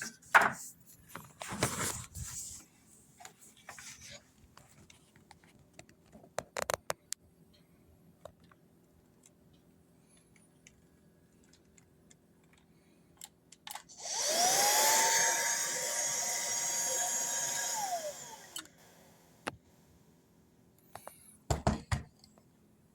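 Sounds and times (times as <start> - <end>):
cordless vacuum cleaner running: 13.9 - 19.5.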